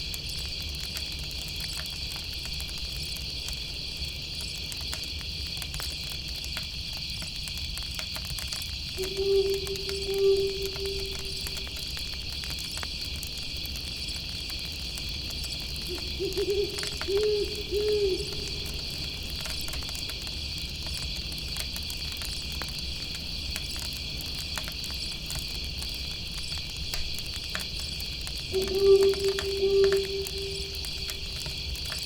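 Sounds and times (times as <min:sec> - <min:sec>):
campfire crackling: 0:00.0 - 0:32.0
insects chirring: 0:08.4 - 0:32.0
owl hooting: 0:09.0 - 0:12.1, 0:15.8 - 0:19.1, 0:28.5 - 0:31.9.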